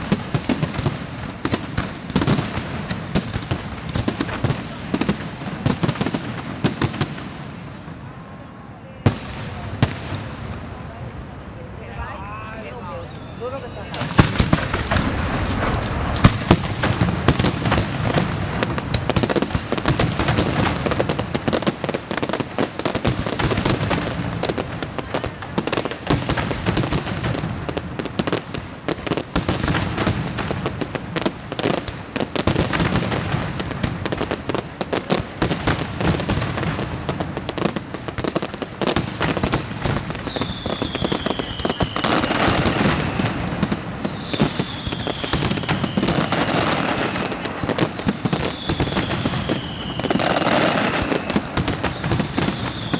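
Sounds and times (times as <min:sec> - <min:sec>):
fireworks banging and crackling: 0:00.0 - 0:52.9
falling firework whistle: 0:12.1 - 0:18.2, 0:40.0 - 0:52.9.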